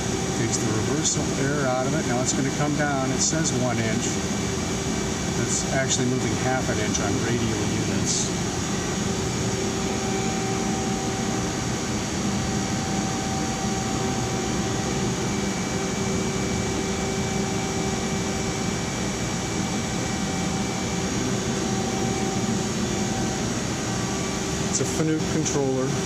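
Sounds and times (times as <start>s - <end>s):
lathe humming: 0.0s - 26.0s.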